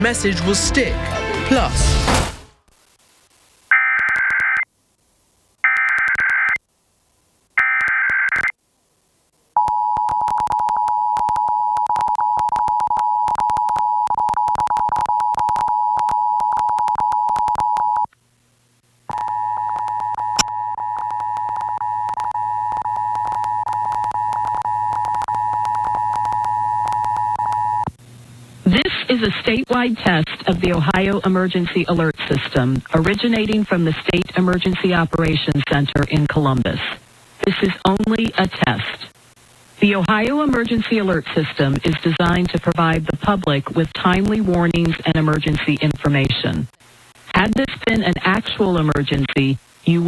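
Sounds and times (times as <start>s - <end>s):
crackling clicks: 2.7s - 4.7s, 5.6s - 6.7s, 7.6s - 8.5s, 9.6s - 18.2s, 19.1s - 28.3s.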